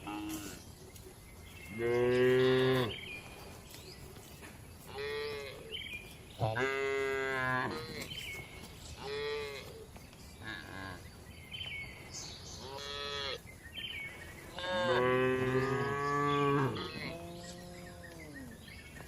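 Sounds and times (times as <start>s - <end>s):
cows mooing: 6.4s - 8.1s, 14.6s - 18.5s.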